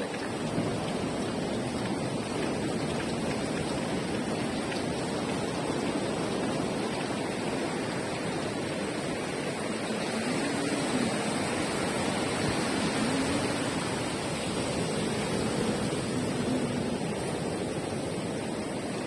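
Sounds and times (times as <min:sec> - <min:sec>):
sea surf rushing: 0:00.0 - 0:19.0.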